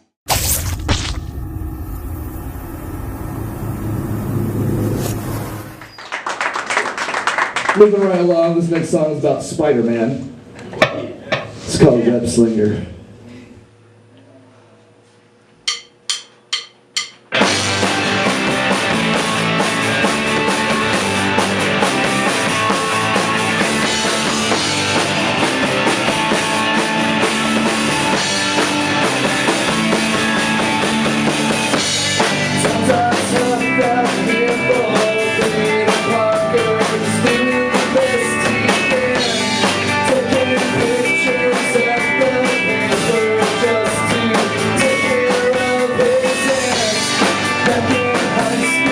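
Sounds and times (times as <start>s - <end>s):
drum kit: 15.7s - 48.9s
live band playing: 17.4s - 48.9s.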